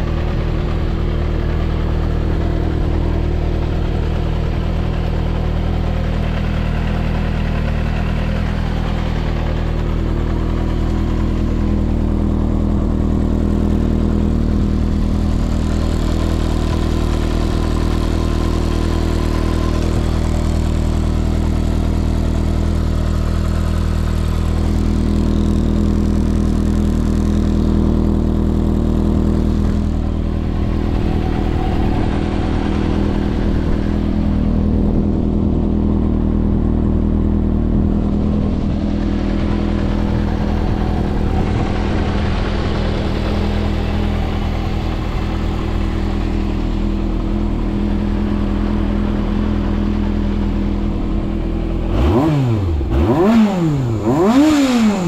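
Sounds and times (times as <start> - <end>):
motorcycle engine idling: 0.0 - 55.0.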